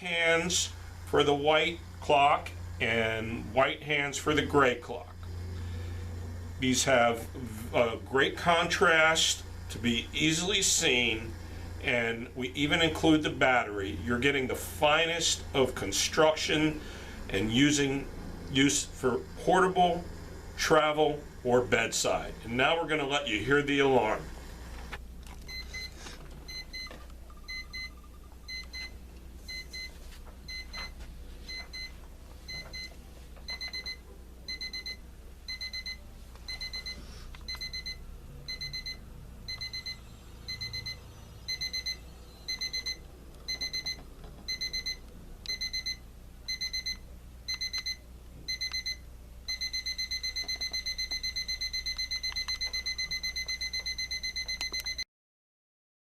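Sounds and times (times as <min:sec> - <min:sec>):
alarm clock beeping: 0:25.5 - 0:25.9, 0:26.5 - 0:30.9, 0:32.5 - 0:32.9, 0:33.5 - 0:55.0.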